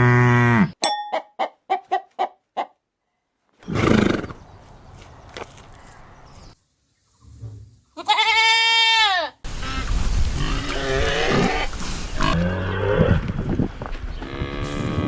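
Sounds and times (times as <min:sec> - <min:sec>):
background noise: 0:00.0 - 0:15.0
goat bleating: 0:08.0 - 0:09.4.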